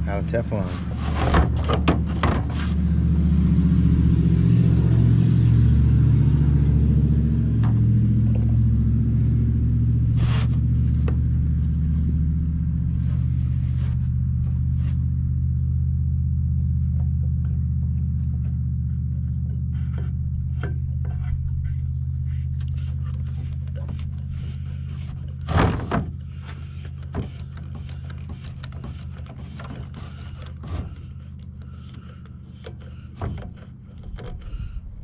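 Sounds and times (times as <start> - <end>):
motor humming: 7.4 - 35.0.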